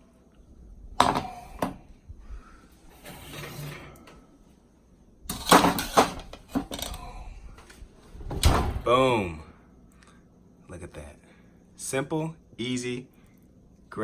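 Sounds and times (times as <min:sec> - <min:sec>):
kitchenware knocks and clatter: 0:01.0 - 0:01.9, 0:05.3 - 0:07.0.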